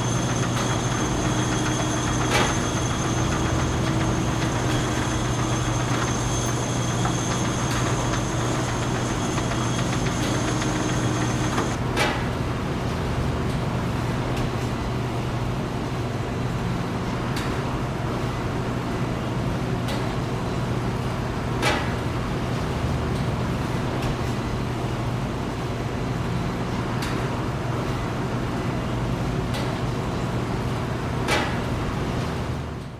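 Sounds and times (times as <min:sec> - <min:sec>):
factory machinery hum: 0:00.0 - 0:11.8
high-pitched machine whine: 0:00.0 - 0:11.8
sharp clanks: 0:00.0 - 0:11.8.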